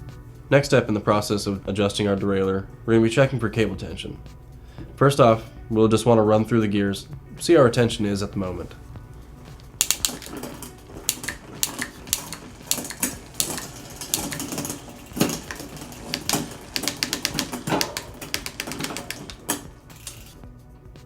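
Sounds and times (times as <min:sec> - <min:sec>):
bicycle gears clicking: 0:07.9 - 0:20.4
bicycle chain running: 0:08.0 - 0:20.4.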